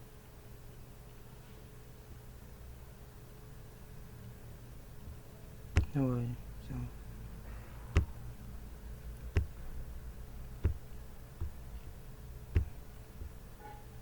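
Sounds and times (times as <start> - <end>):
faint steady hum: 0.0 - 14.0
computer mouse clicking: 8.0 - 8.2, 9.3 - 9.6, 10.4 - 12.0.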